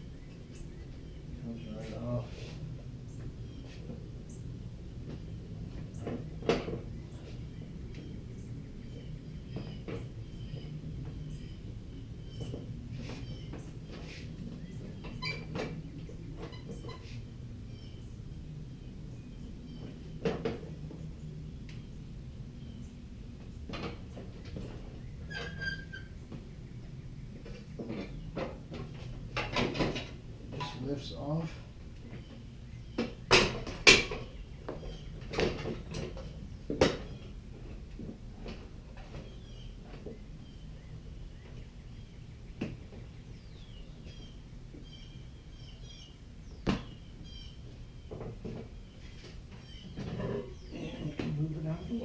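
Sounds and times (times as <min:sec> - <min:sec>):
small birds chirping: 0:00.0 - 0:04.5, 0:05.1 - 0:29.3, 0:30.6 - 0:33.4, 0:34.1 - 0:37.5, 0:38.4 - 0:52.0
high squeak: 0:25.3 - 0:26.1.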